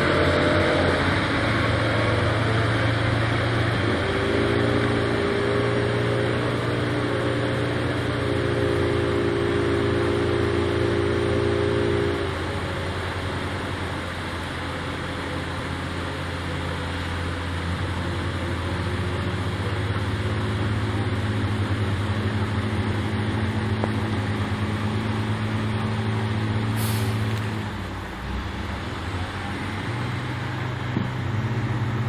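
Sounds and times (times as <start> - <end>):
diesel truck engine running: 0.0 - 32.0
brief hiss: 26.7 - 28.3.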